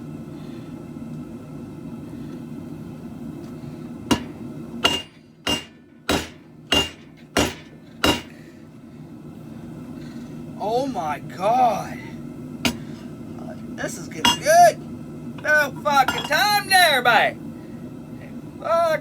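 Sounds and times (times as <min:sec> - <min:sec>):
hammer striking steel on anvil: 0:04.1 - 0:08.4.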